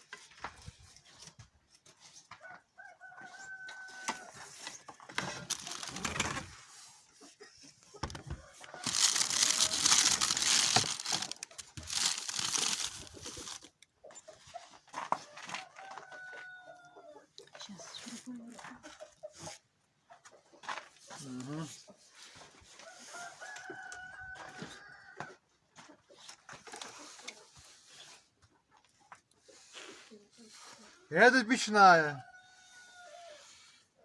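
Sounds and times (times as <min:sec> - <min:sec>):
rustling and crinkling: 0:03.2 - 0:16.2.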